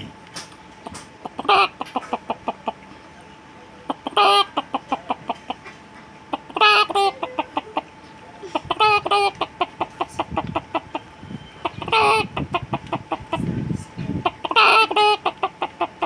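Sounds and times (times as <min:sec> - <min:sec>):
person imitating hen clucking: 0:01.2 - 0:02.8, 0:03.8 - 0:16.0.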